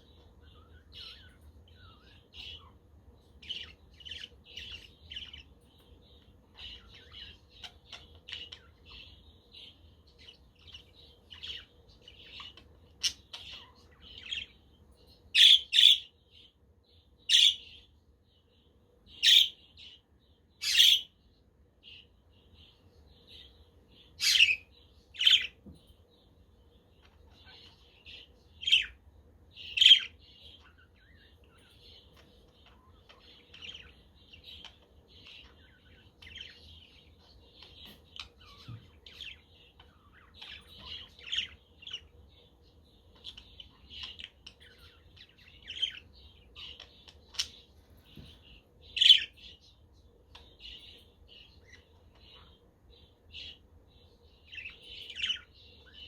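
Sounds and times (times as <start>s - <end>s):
budgerigars chattering: 17.3s - 17.7s, 19.2s - 19.6s.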